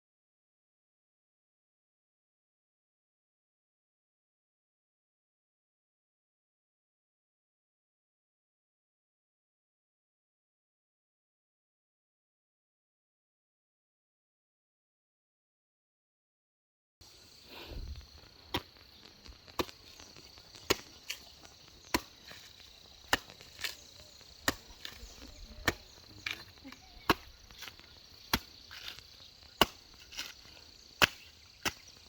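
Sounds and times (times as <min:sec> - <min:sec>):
insect trill: 0:17.0 - 0:32.0
blade chopping coconut: 0:20.7 - 0:21.2, 0:21.9 - 0:23.8, 0:24.4 - 0:26.4, 0:27.1 - 0:29.0, 0:29.6 - 0:30.4, 0:31.0 - 0:31.9.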